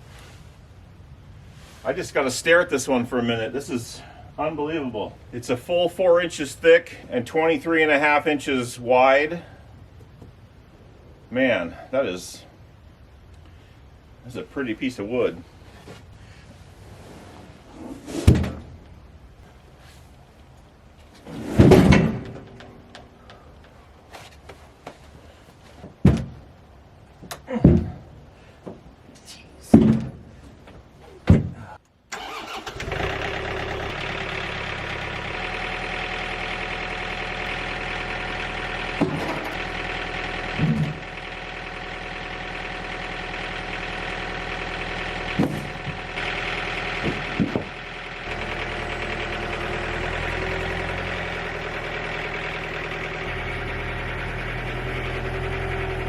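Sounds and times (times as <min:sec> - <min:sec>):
sawmill engine running: 0:32.2 - 0:56.0
sharp wooden knocks: 0:47.0 - 0:47.8.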